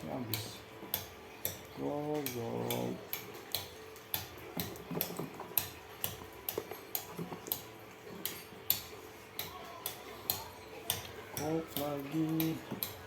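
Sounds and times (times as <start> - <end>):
phones and boxes clicking: 0.3 - 13.0.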